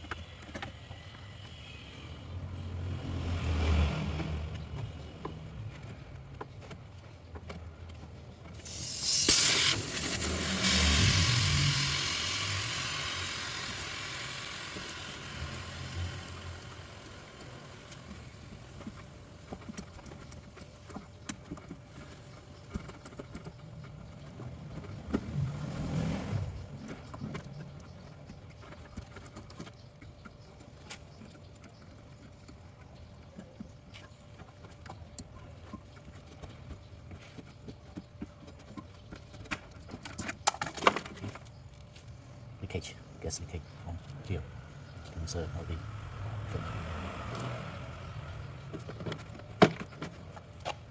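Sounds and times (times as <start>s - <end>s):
hiss: 8.6s - 19.1s.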